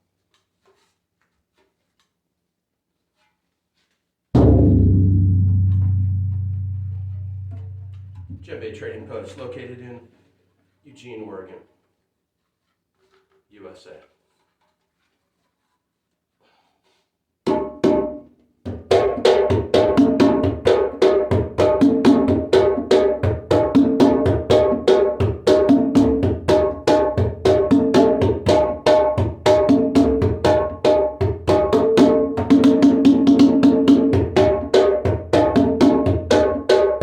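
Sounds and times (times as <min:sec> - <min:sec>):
hand drum strokes: 0:03.1 - 0:08.5.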